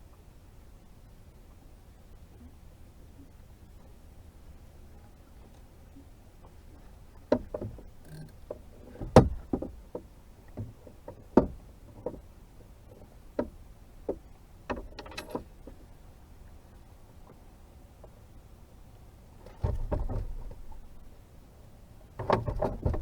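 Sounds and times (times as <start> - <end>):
gear knocking in a boat: 6.4 - 15.9, 19.4 - 21.1, 22.1 - 23.0.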